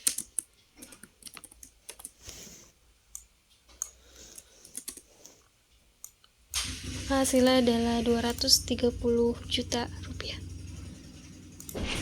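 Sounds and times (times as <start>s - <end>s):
typing on computer keyboard: 0.0s - 2.2s, 3.2s - 5.1s.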